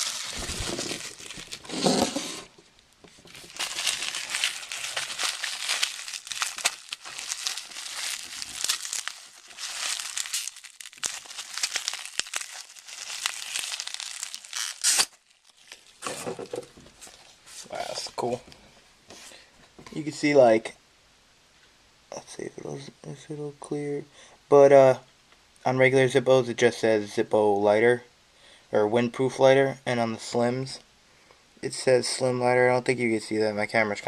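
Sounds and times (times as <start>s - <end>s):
paper packaging crinkling: 0.0s - 18.1s.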